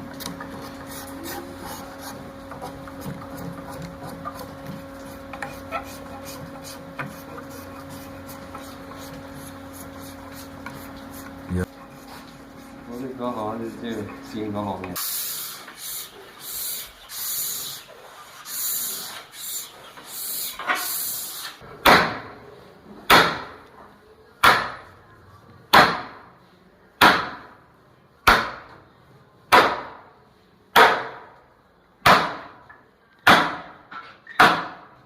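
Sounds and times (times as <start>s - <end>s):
sanding on wood: 0.5s - 12.3s.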